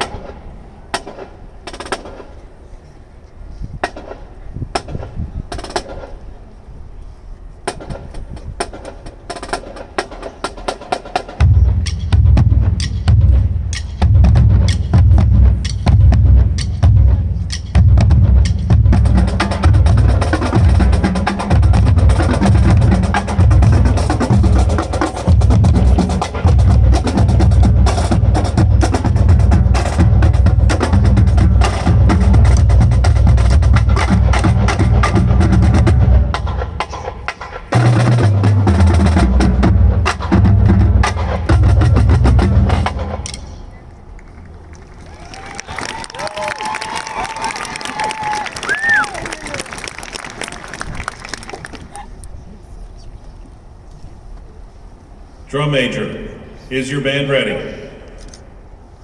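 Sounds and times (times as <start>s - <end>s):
bass drums pounding: 11.4s - 36.9s, 37.7s - 43.3s.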